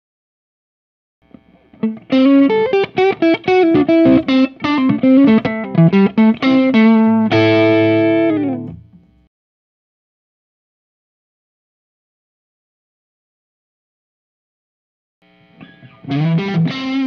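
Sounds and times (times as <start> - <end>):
distorted electric guitar: 1.2 - 9.3, 15.2 - 17.0.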